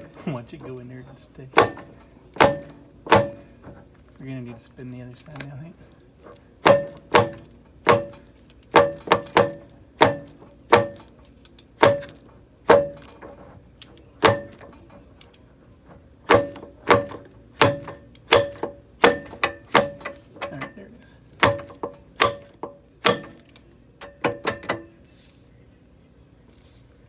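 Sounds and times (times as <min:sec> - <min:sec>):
metal-on-metal strikes clanging: 0:01.5 - 0:03.6, 0:06.3 - 0:15.4, 0:16.2 - 0:25.0.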